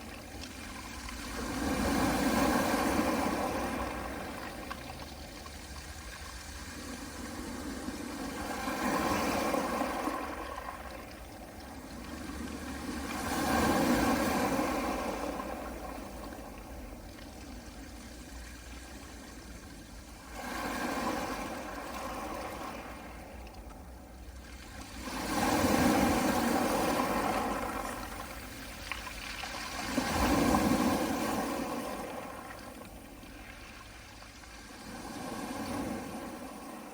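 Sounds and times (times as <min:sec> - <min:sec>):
waves washing onto pebble beach: 0:00.0 - 0:17.9, 0:20.2 - 0:23.4, 0:24.5 - 0:36.9.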